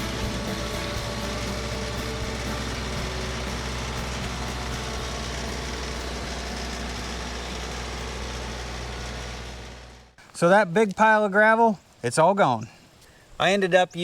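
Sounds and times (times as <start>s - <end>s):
tractor engine running: 0.0s - 10.4s.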